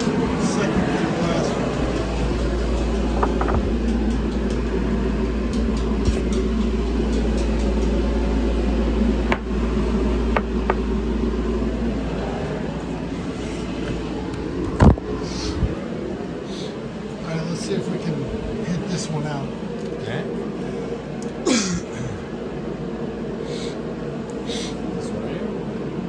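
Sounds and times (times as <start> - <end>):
low rumble: 0.0 - 17.2.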